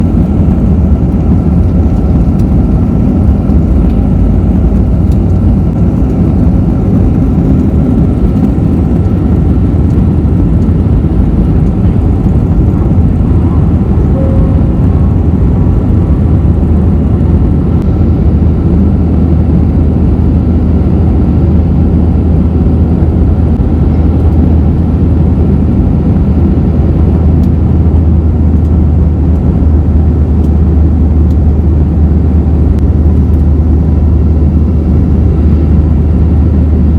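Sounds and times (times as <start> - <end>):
jet engines rumbling: 0.0 - 36.9
faint thin whine: 11.4 - 17.6.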